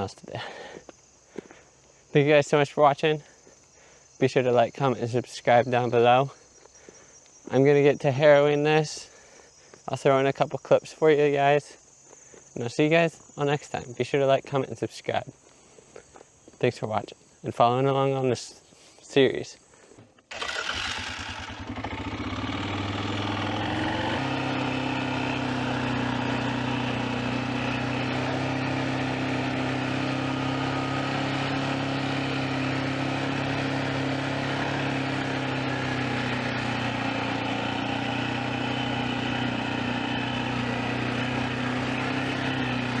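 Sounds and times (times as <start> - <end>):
tractor engine running: 20.3 - 43.0.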